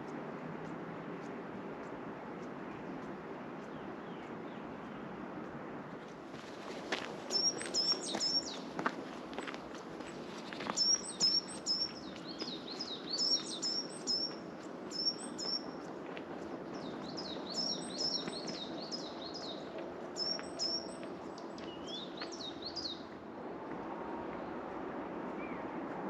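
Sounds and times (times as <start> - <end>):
songbird chirping: 6.7 - 23.2.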